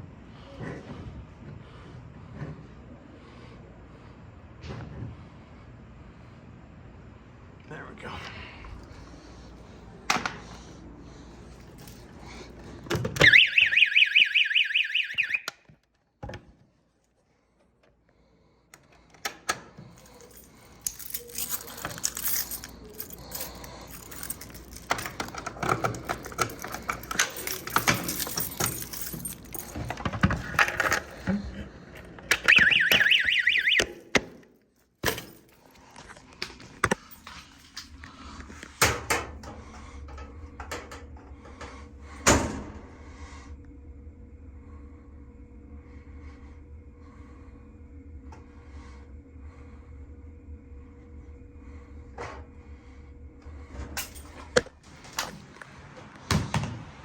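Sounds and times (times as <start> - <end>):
fire alarm horn pulsing: 13.2 - 15.6, 32.4 - 34.0.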